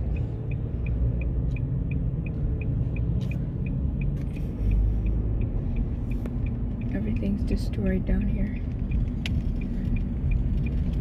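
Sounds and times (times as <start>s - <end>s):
quiet regular ticking: 0.0s - 11.0s
road and engine rumble: 0.0s - 11.0s.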